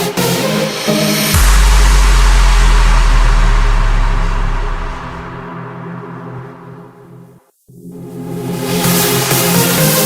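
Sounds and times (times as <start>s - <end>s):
deep sub-bass note: 1.3s - 7.1s
wash of noise: 1.4s - 6.8s.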